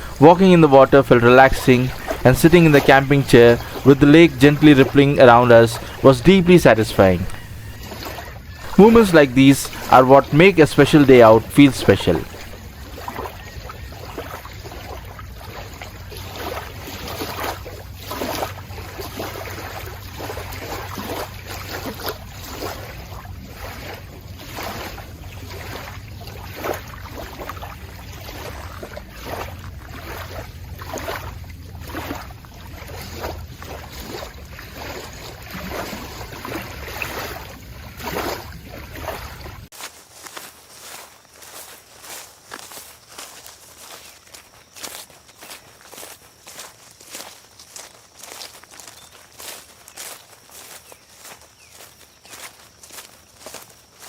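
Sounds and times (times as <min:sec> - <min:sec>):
water splashing from wading: 0:00.0 - 0:54.0.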